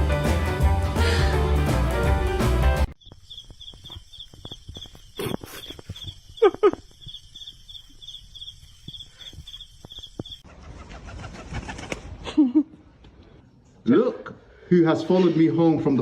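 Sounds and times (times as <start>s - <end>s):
insect chirping: 2.9s - 10.5s.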